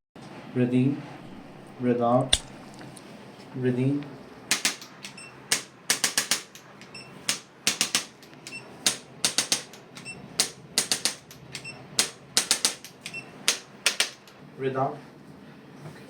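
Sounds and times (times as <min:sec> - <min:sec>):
sharp clicks: 0:04.5 - 0:14.4.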